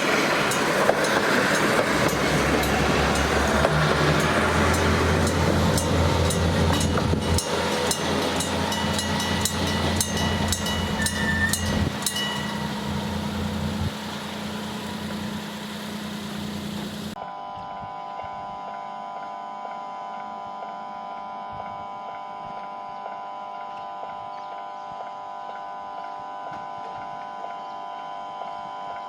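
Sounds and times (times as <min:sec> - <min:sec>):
train rumble: 0:00.0 - 0:17.2
diesel railcar engine drone: 0:00.0 - 0:29.0.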